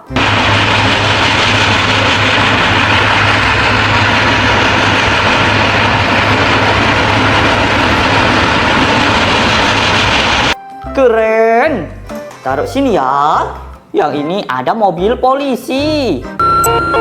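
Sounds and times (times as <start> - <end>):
steam train rushing noise: 0.0 - 10.6
low rumble: 0.1 - 10.6.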